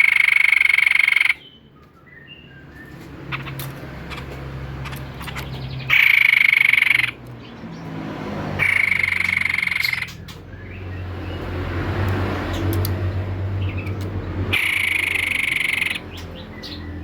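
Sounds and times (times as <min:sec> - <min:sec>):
bird pulsed trills: 0:00.0 - 0:07.2, 0:08.6 - 0:11.0, 0:14.5 - 0:17.0.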